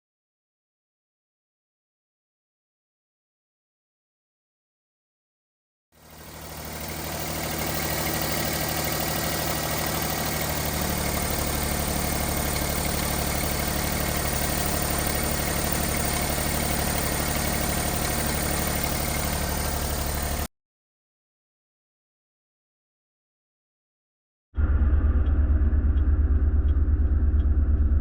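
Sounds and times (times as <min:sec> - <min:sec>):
truck engine idling: 0:06.0 - 0:20.5.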